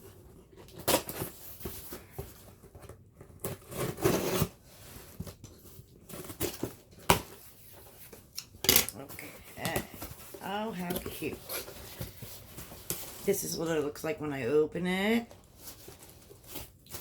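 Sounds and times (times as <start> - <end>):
tape tearing: 3.3 - 5.3.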